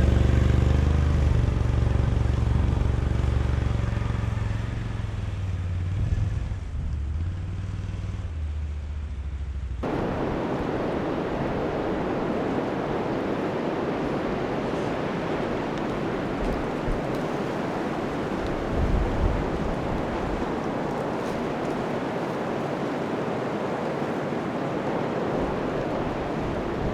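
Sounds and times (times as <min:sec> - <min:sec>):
strong steady wind noise: 0:00.0 - 0:07.2, 0:09.8 - 0:26.9
atv engine running: 0:00.0 - 0:09.8.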